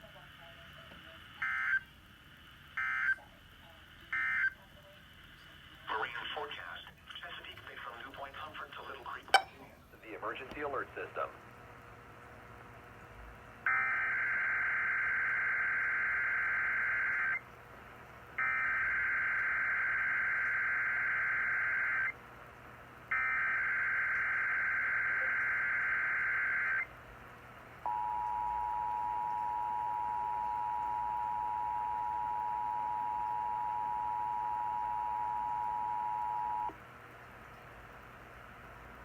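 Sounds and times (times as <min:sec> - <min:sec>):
two-tone attention signal: 0:27.9 - 0:36.7.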